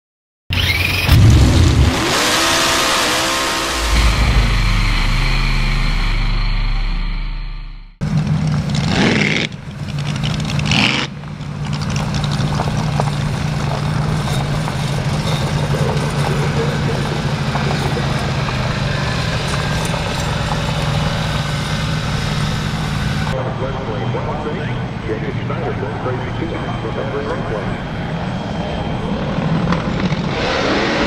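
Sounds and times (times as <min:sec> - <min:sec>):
boat engine revving and idling: 0:00.5 - 0:06.9, 0:08.0 - 0:23.4.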